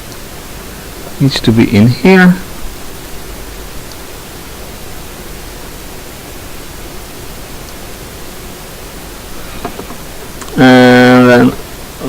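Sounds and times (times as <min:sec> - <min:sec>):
steady hiss: 0:00.0 - 0:12.0
faint ticks: 0:03.8 - 0:04.1.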